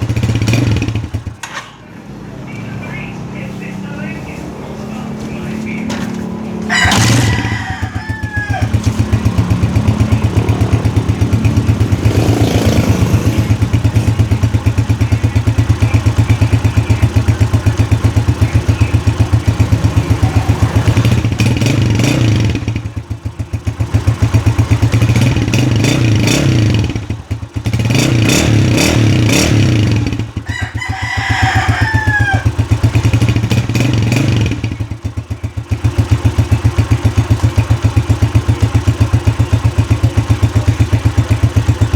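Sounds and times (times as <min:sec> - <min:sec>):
motorcycle engine idling: 0:00.0 - 0:41.9
rooster crowing: 0:06.6 - 0:09.4, 0:30.4 - 0:33.0.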